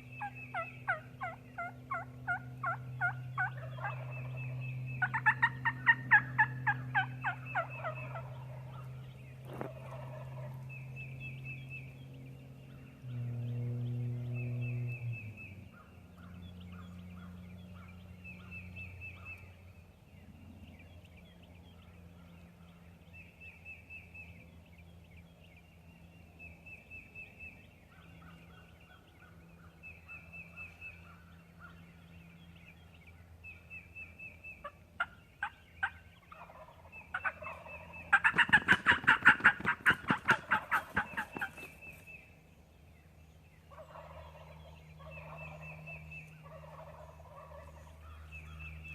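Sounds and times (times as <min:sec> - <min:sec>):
turkey call notes: 0:00.0 - 0:04.2, 0:05.0 - 0:08.9, 0:34.1 - 0:41.8
steady low hum: 0:00.0 - 0:48.9
rapid turkey yelps: 0:00.2 - 0:04.2, 0:05.0 - 0:08.9, 0:34.6 - 0:41.8, 0:43.7 - 0:48.3.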